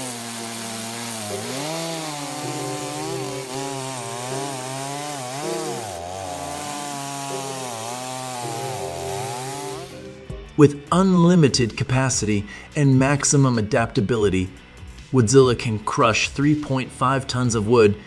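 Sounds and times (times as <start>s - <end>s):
chainsaw cutting wood: 0.0s - 10.1s.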